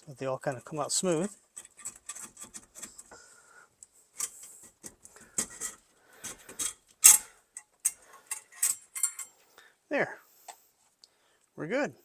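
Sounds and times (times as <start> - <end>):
plastic parts clicking and rubbing: 0.0 - 3.2, 3.8 - 9.4.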